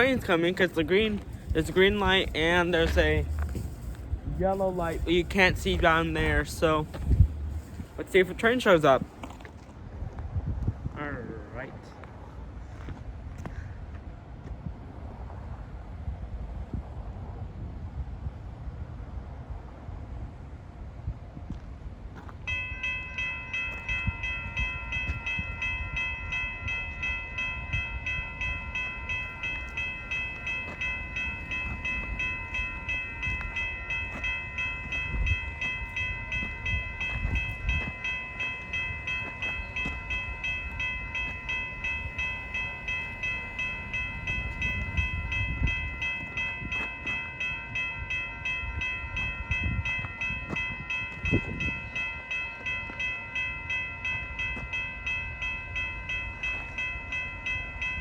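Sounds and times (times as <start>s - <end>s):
crossing warning bell ringing: 0.0s - 9.4s, 22.4s - 58.0s.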